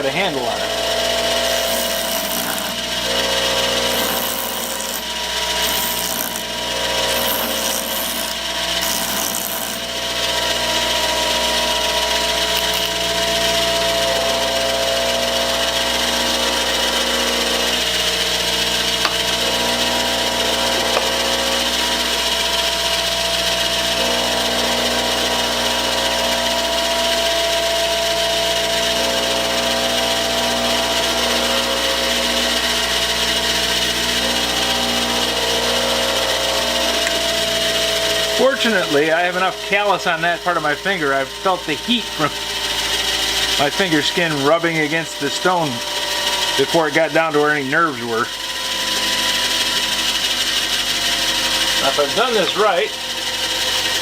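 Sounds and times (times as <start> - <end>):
grindstone whining: 0.0 - 54.0
metal screw grinding on stone: 0.8 - 13.8.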